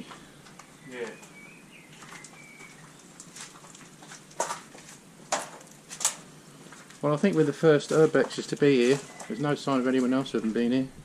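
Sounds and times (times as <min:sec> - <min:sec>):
sharp cracks: 0:02.0 - 0:06.3.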